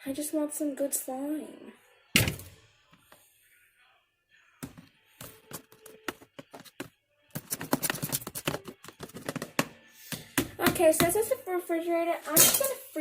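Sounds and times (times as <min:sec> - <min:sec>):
taps and knocks of handling: 0:04.6 - 0:11.2.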